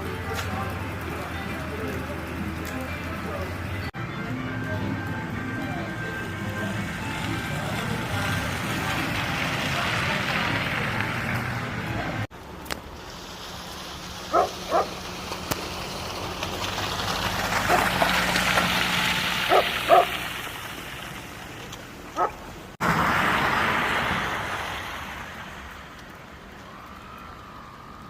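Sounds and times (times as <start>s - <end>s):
dog barking: 14.3s - 14.9s, 17.7s - 17.9s, 19.5s - 20.1s, 22.2s - 22.4s.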